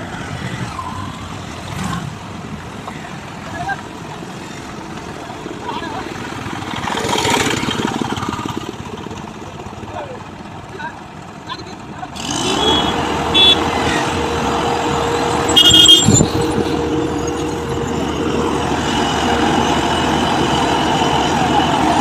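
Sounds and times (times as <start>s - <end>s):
heavy construction machinery running: 2.3s - 22.0s
short horn toots: 15.5s - 16.4s.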